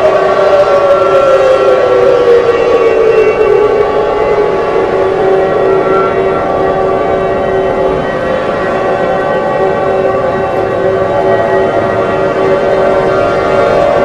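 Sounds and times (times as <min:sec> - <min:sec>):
chord of higher tones: 0:00.0 - 0:14.0
rushing noise: 0:00.0 - 0:14.0
steady tone: 0:00.0 - 0:14.0
wailing alert siren: 0:00.0 - 0:14.0.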